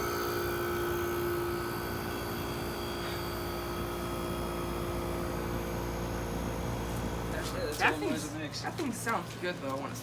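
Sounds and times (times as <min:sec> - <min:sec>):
window air conditioner humming: 0:00.0 - 0:10.0.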